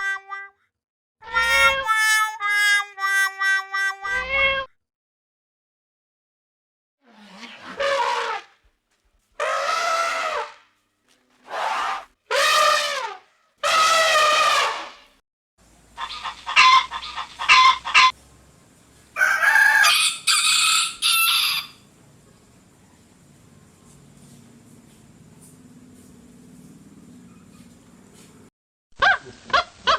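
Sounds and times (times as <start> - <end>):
chicken clucking: 16.0 - 18.1
rooster crowing: 19.2 - 21.8.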